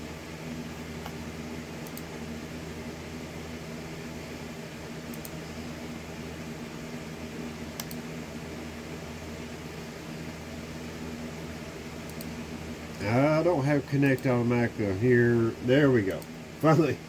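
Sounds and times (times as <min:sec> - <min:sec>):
low hum with hiss: 0:00.0 - 0:17.0.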